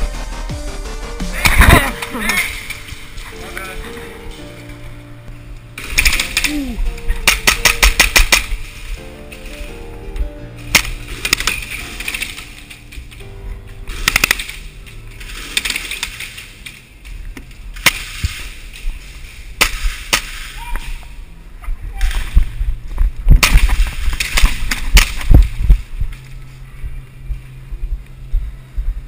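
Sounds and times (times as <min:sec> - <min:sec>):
airsoft guns firing: 0:05.8 - 0:08.7, 0:13.9 - 0:16.5, 0:17.7 - 0:18.7, 0:19.6 - 0:21.1, 0:23.3 - 0:25.6.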